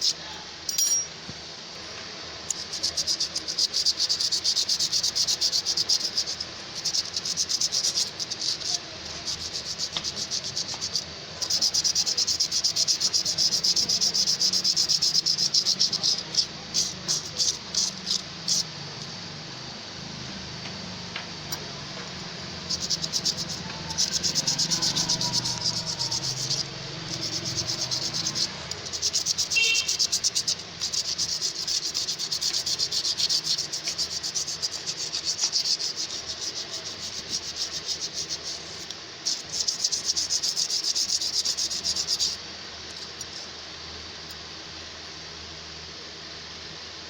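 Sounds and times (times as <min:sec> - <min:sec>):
abrasive scratching on scissor blade: 0:02.5 - 0:18.7, 0:22.5 - 0:42.4.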